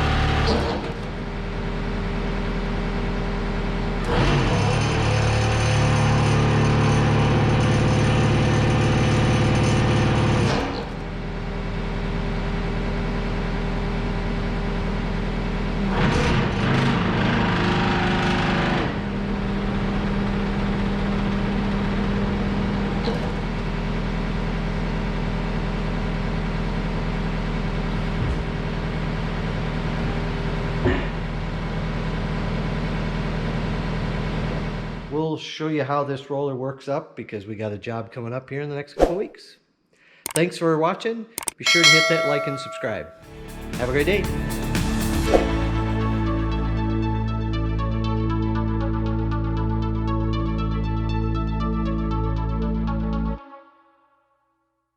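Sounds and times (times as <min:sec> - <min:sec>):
skid steer diesel engine running: 0:00.0 - 0:35.1.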